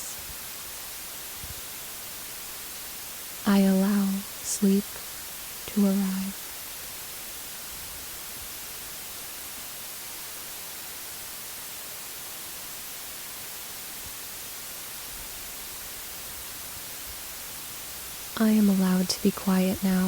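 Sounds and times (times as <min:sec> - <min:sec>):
steady white noise hiss: 0:00.0 - 0:20.0.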